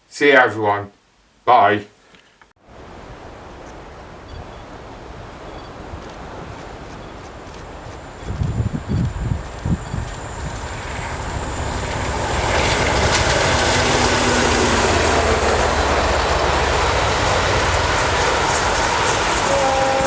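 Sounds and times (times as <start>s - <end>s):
train rumbling past: 5.5s - 20.0s
rail clatter: 6.5s - 20.0s.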